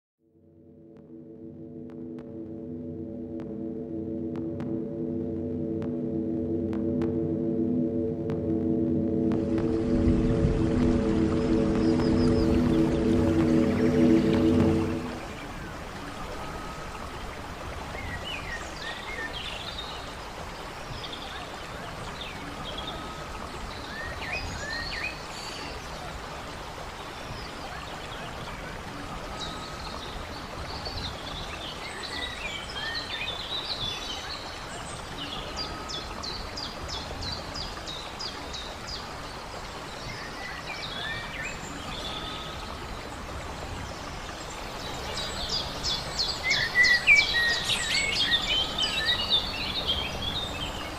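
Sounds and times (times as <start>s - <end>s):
stream running: 1.4s - 50.9s.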